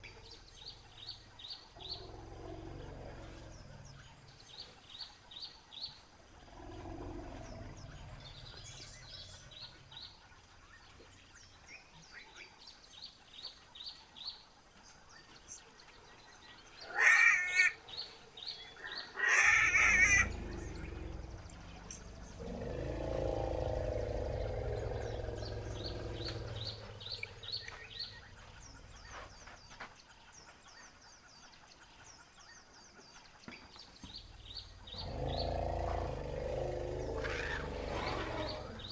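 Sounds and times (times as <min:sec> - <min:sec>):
deep elephant rumbles: 0:06.4 - 0:10.3, 0:19.4 - 0:29.7, 0:34.0 - 0:38.9.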